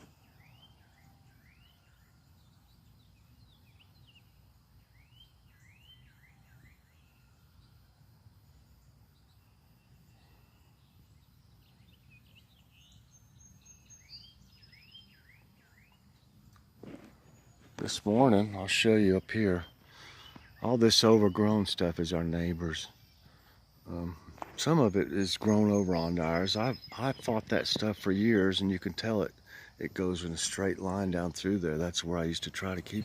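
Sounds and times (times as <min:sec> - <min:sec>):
songbirds chirping faintly: 0:00.0 - 0:33.0.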